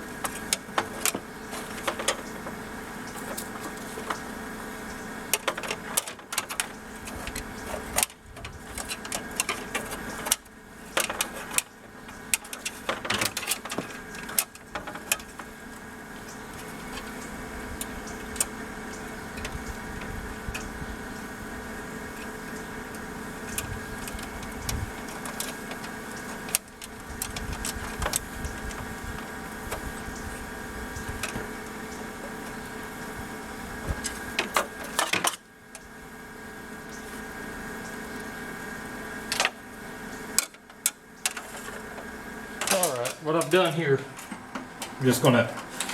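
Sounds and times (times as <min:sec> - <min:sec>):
machine humming: 0:00.0 - 0:45.9
sharp clicks and knocks: 0:05.3 - 0:15.5.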